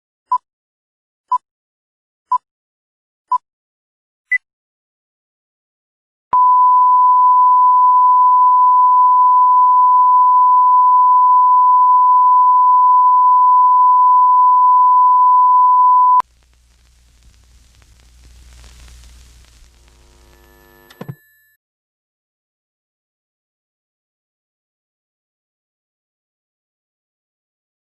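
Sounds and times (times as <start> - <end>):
faint low hum and hiss: 16.3 - 20.9.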